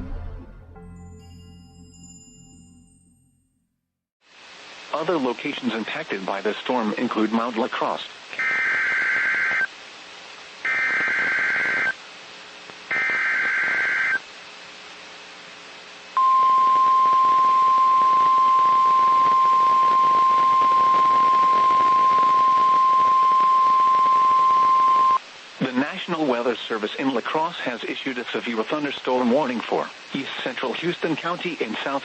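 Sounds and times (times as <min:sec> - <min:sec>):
buzzy digital data bursts: 0:08.4 - 0:09.7, 0:10.6 - 0:12.0, 0:12.9 - 0:14.2
steady warning alarm tone: 0:08.4 - 0:09.7, 0:10.7 - 0:12.0, 0:12.9 - 0:14.2, 0:16.2 - 0:25.2.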